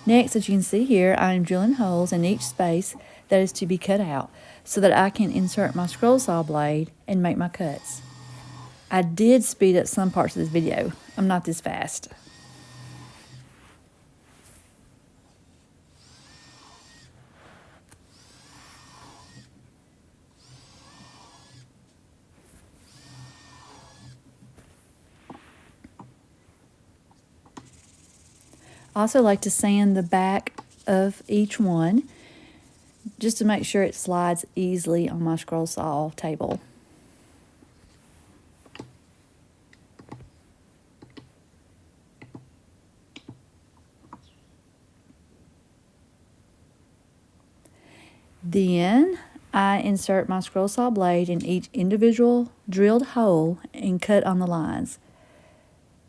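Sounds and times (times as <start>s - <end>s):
electric drill whining: 0.0s - 3.2s, 7.8s - 9.3s, 9.9s - 13.5s, 15.9s - 17.2s, 18.1s - 19.6s, 20.3s - 21.7s, 22.8s - 24.2s.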